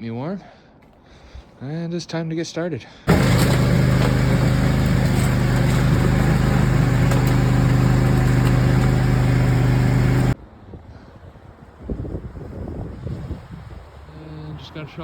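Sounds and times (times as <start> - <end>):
lawn tractor engine running: 3.1 - 10.4.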